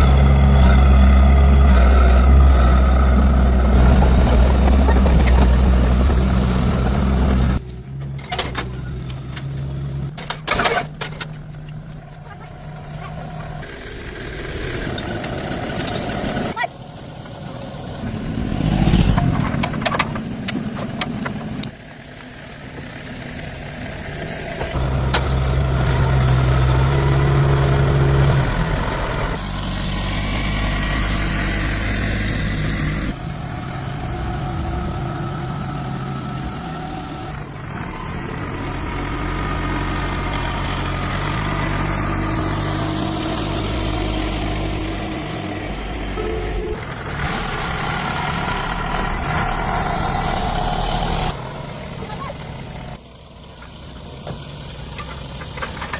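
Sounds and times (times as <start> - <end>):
car engine idling: 11.2 - 55.9.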